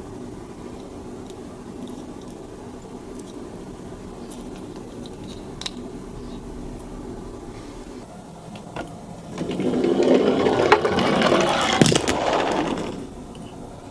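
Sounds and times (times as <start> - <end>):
low steady hum: 0.0 - 13.9
toy cars rattling down a slope: 9.3 - 13.1.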